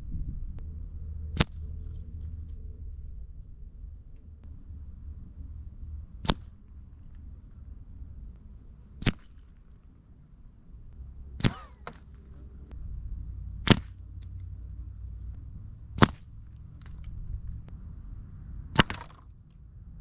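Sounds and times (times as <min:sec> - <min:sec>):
suppressed rifle shots: 0:06.2 - 0:10.0, 0:11.3 - 0:12.6, 0:13.6 - 0:15.3, 0:18.8 - 0:19.3.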